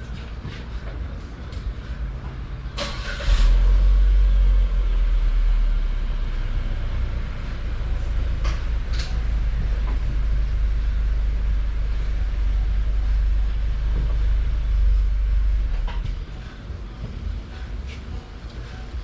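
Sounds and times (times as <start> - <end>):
car engine starting and idling: 2.1 - 16.5.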